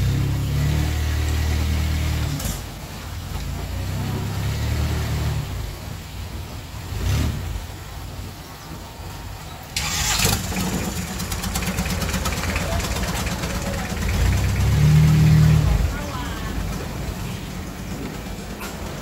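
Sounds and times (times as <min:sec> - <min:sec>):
boat engine drone: 0:00.0 - 0:19.0.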